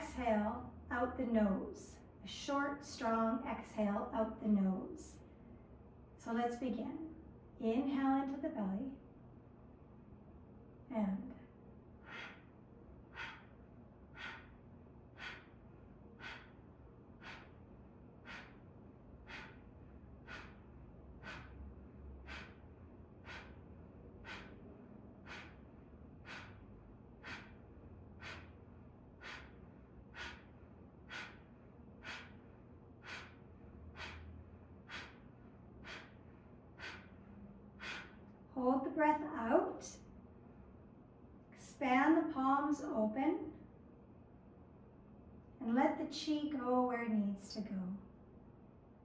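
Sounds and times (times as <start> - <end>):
forceful exhalations through the nose: 12.0 - 12.5, 13.1 - 38.3.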